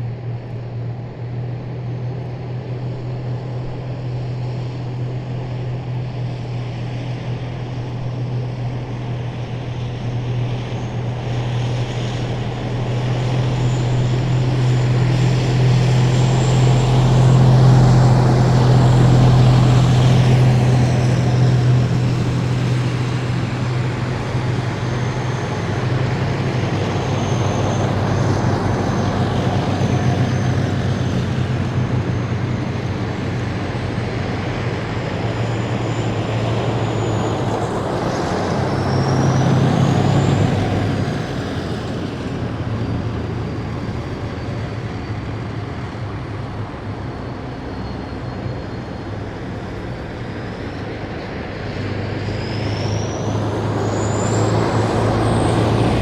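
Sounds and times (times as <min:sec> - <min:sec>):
diesel engine drone: 0:00.0 - 0:56.0
tyre and road noise: 0:04.6 - 0:56.0.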